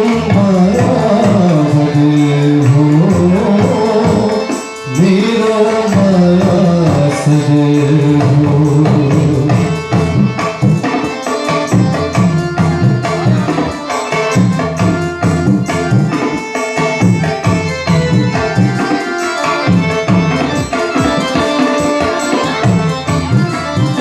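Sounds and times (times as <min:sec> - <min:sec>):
person singing folk song: 0:00.0 - 0:10.1
hand drum: 0:00.0 - 0:24.0.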